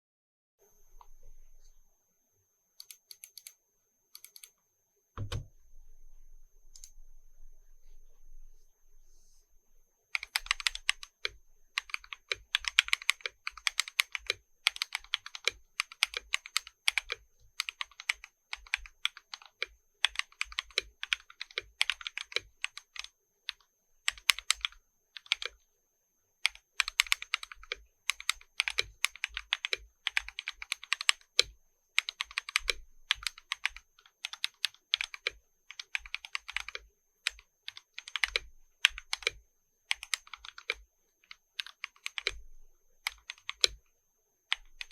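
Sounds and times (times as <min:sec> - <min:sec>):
mechanical keyboard typing: 0:02.8 - 0:03.6, 0:04.2 - 0:04.5, 0:10.1 - 0:25.6, 0:26.4 - 0:42.4, 0:43.0 - 0:43.8, 0:44.5 - 0:44.9.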